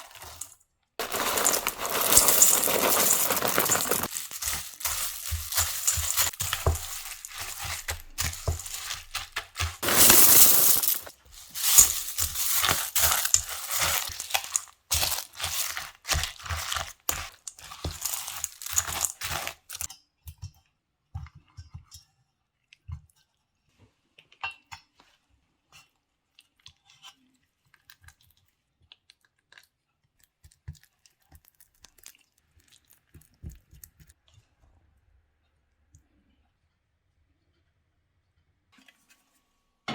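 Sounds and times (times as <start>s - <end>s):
hard pieces clinking against glass: 0.0s - 9.1s, 9.8s - 15.8s, 16.6s - 19.9s
crunching and crinkling: 0.0s - 19.9s.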